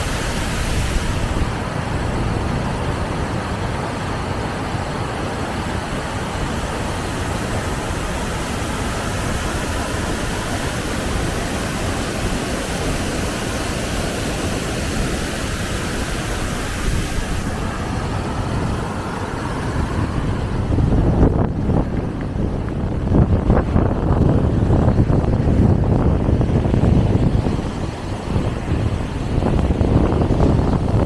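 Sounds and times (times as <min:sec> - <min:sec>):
steady rushing noise: 0:00.0 - 0:31.0
wind buffeting microphone: 0:00.0 - 0:31.0.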